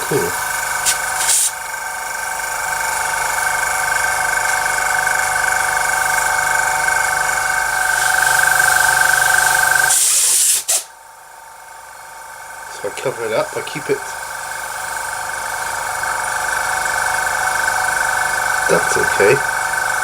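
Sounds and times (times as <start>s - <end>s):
airbrush compressor running: 0.0s - 20.0s
short hiss: 9.9s - 10.9s.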